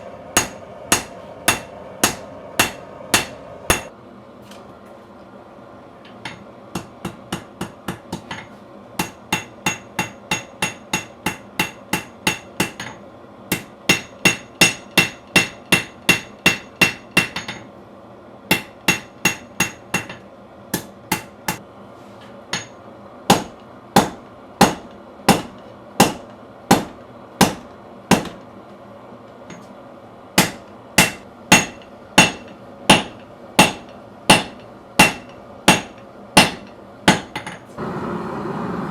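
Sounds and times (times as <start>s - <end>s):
hammer ringing on anvil: 0.4s - 3.9s, 6.2s - 17.7s, 18.5s - 20.2s, 30.4s - 37.6s.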